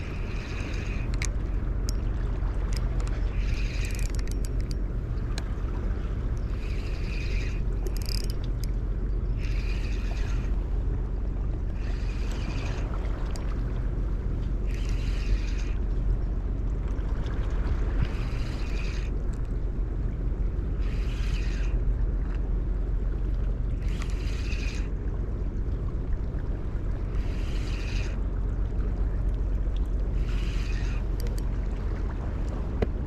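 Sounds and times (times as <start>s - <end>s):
spinning reel cranking: 0.0s - 2.0s, 2.7s - 4.8s, 6.4s - 10.6s, 14.7s - 15.8s, 18.1s - 19.1s, 20.8s - 21.8s, 23.8s - 24.9s, 27.2s - 28.2s, 30.2s - 31.5s
wind rumble on microphone: 0.0s - 33.0s.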